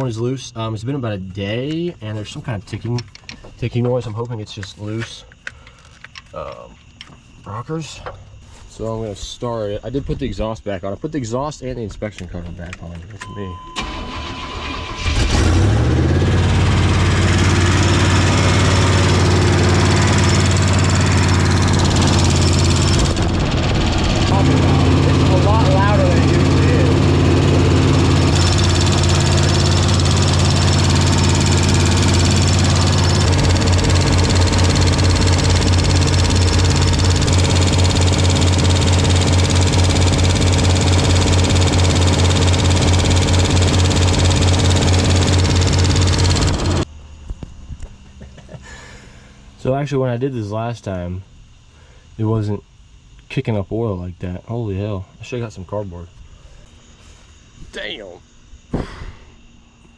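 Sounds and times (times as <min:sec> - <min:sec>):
pickup engine starting and idling: 0:13.7 - 0:46.9.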